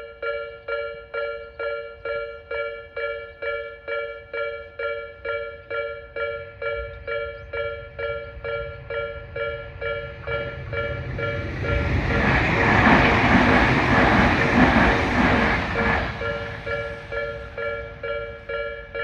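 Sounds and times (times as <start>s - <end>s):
level-crossing alarm ringing: 0.0s - 19.0s
low rumble of train: 0.0s - 19.0s.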